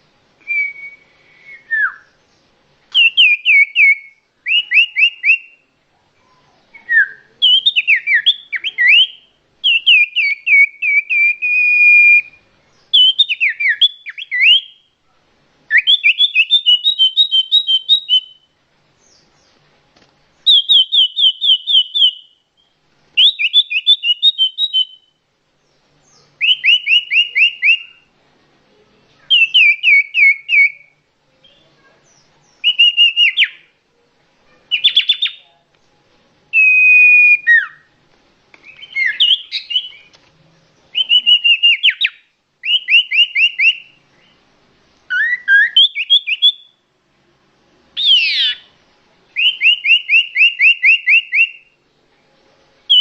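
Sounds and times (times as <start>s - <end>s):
bird singing falling notes: 2.9s - 5.6s
bird slurred whistles: 15.7s - 18.4s, 20.5s - 22.3s, 23.2s - 25.1s, 36.6s - 37.8s, 41.0s - 43.9s, 45.1s - 46.7s, 48.0s - 48.7s.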